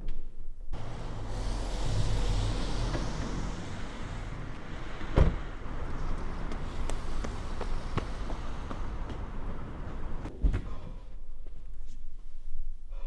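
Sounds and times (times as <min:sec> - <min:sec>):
road vehicle rumbling: 0:00.8 - 0:10.3.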